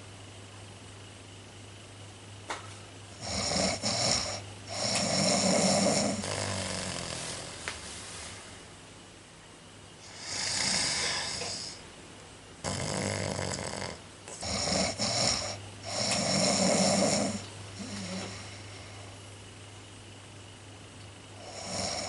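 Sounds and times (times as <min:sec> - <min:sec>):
person snoring: 0:03.2 - 0:07.6, 0:10.0 - 0:11.8, 0:12.6 - 0:19.0, 0:21.4 - 0:22.0.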